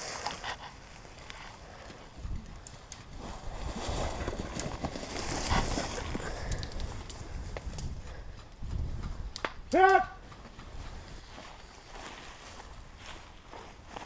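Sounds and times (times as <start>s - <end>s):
footsteps on dry ground: 10.0s - 14.0s.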